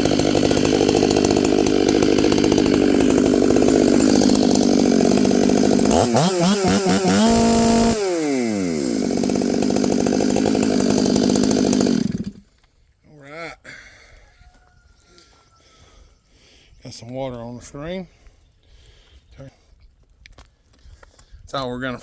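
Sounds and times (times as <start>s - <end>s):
chainsaw running at high throttle: 0.0s - 12.5s.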